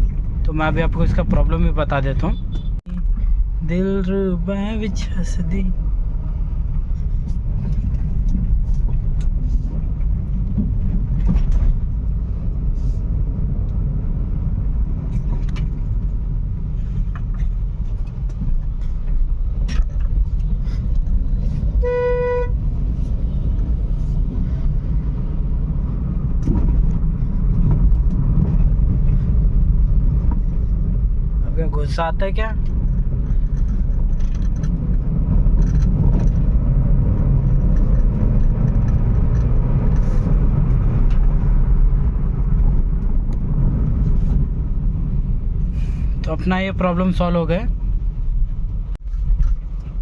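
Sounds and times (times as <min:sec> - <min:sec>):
car engine and road noise: 0:00.0 - 0:50.0
car horn toot: 0:21.8 - 0:22.6.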